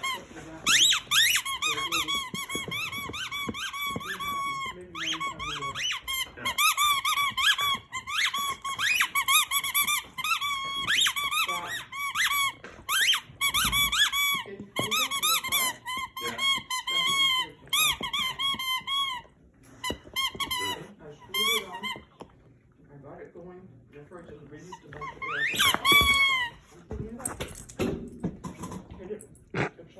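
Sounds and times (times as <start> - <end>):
squeaky toy squeaking: 0.0 - 22.1, 24.8 - 26.6.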